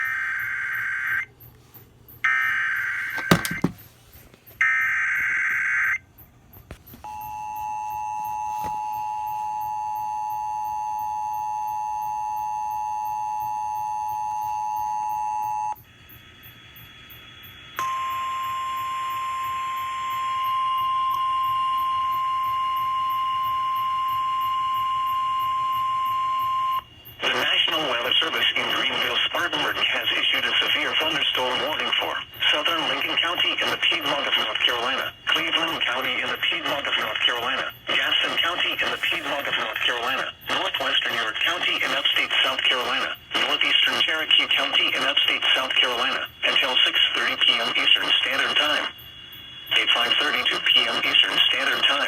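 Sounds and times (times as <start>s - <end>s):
steady alert tone with hiss: 27.1s - 52.0s.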